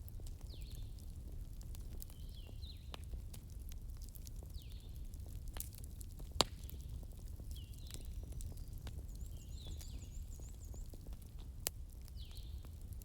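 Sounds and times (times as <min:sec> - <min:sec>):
wood fire crackling: 0:00.0 - 0:13.0
sharp fire pops: 0:05.6 - 0:08.6.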